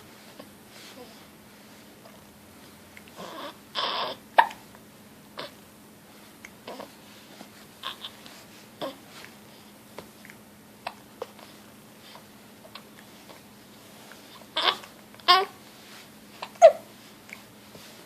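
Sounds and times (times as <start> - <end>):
baby noises: 3.2 - 4.6, 7.8 - 8.2, 14.5 - 15.6, 16.4 - 16.9
baby hiccuping: 3.3 - 4.6, 16.4 - 16.8.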